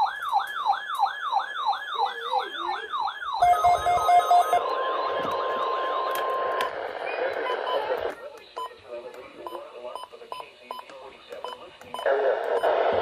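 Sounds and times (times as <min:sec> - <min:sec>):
steady warning alarm tone: 0:00.0 - 0:04.6.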